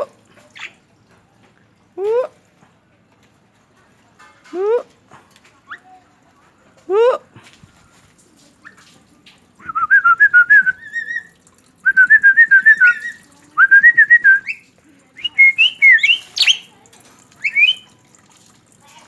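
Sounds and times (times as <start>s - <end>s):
bird whistling warbling trills: 9.6s - 14.6s, 15.2s - 16.7s, 17.4s - 17.9s.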